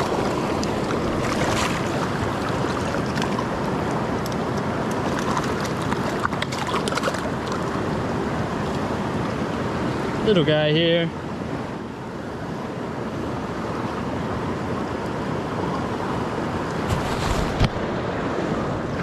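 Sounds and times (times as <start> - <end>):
creek water rushing over rocks: 0.0 - 19.0
faint splashes and clicks: 2.5 - 7.7.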